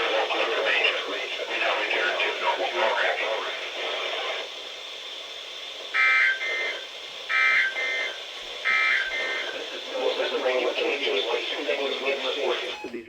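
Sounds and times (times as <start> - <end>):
buzzy data tone bursts: 5.9 - 12.8.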